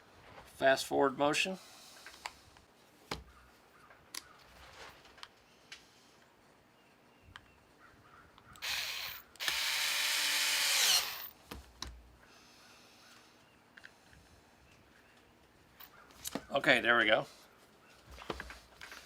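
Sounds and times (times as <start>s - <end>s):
cordless screwdriver driving screws: 8.6s - 11.3s.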